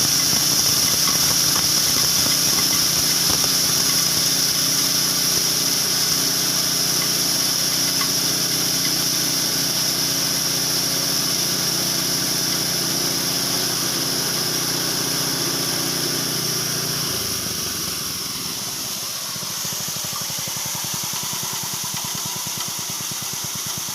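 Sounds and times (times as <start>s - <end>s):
chopper machine grinding corn: 0.0s - 23.9s
engine running: 0.0s - 23.9s.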